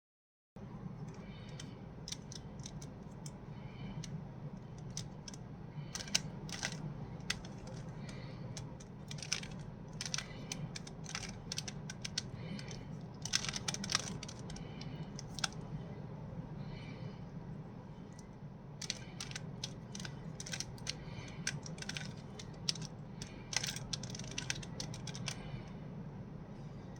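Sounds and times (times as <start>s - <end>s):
steady low hum: 0.6s - 26.9s
plastic puzzle cube clicking: 1.6s - 3.4s, 4.8s - 8.0s, 8.6s - 15.6s, 18.8s - 25.4s.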